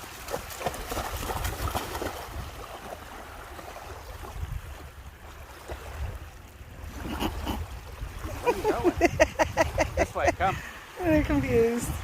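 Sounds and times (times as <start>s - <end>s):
water splashing and sloshing: 0.0s - 12.0s
wind rumble on microphone: 0.0s - 12.0s.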